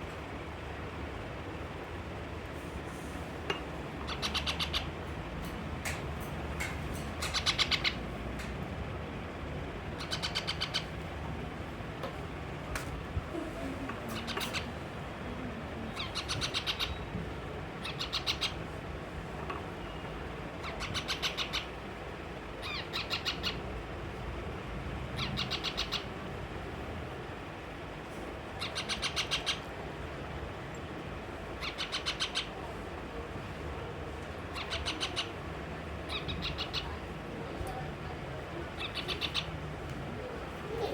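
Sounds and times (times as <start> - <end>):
baby parrot chattering cries: 4.1 - 5.0, 7.2 - 8.0, 10.0 - 11.0, 14.1 - 14.7, 16.0 - 17.1, 17.8 - 18.6, 20.6 - 21.8, 22.6 - 23.6, 25.2 - 26.2, 28.6 - 29.7, 31.6 - 32.6, 34.5 - 35.4, 36.1 - 37.0, 38.8 - 39.5.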